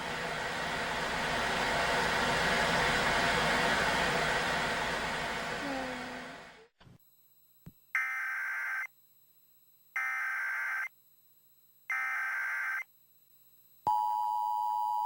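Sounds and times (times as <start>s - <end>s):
loud rush of noise: 0.0s - 6.7s.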